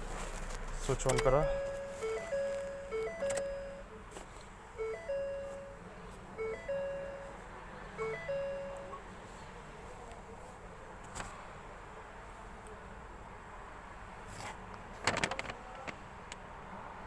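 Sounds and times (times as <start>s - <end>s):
electronic chime: 1.1s - 3.9s, 4.8s - 5.8s, 6.4s - 7.4s, 8.0s - 9.0s.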